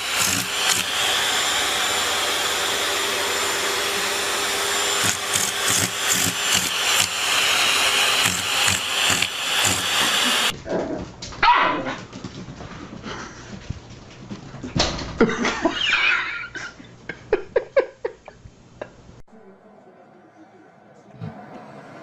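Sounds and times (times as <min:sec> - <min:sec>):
electric blower motor rushing: 0:00.0 - 0:10.5
knocks and rustles: 0:12.0 - 0:15.3.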